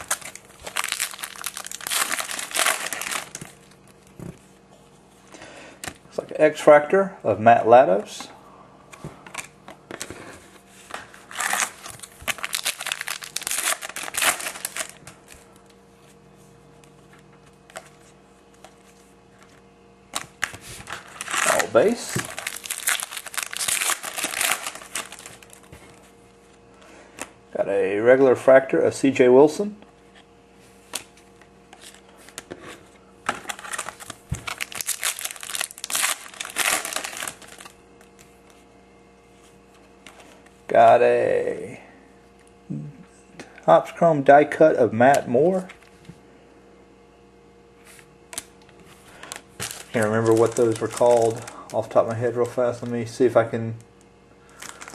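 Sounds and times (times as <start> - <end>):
foil packs crinkling: 0.0 - 4.1, 11.0 - 15.6, 20.2 - 26.0, 33.3 - 37.8, 49.1 - 53.6, 54.4 - 54.9.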